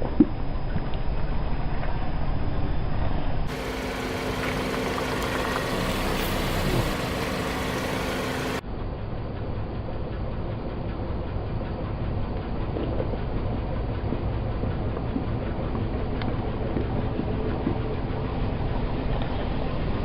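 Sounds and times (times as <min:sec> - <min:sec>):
car engine running: 0:03.5 - 0:08.6.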